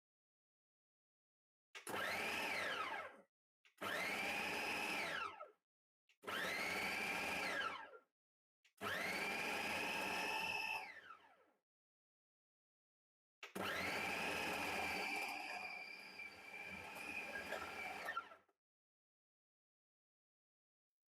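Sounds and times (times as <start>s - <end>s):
electric food mixer motor: 1.8s - 5.6s, 6.2s - 8.0s, 8.7s - 11.5s, 13.4s - 18.5s.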